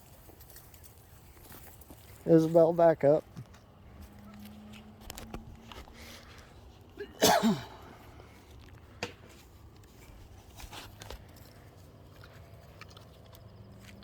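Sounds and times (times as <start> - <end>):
person coughing: 7.0 - 8.0.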